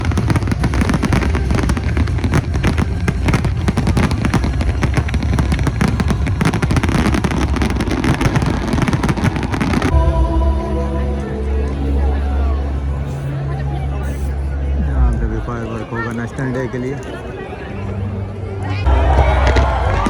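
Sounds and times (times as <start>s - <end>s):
fireworks bangs and crackles: 0.0s - 10.0s, 19.2s - 20.0s.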